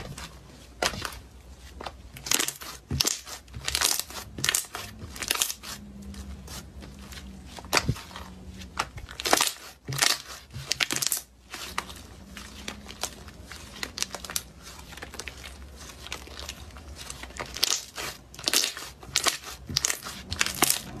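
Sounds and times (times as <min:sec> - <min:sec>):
slime squishing and popping: 0:17.3 - 0:21.0.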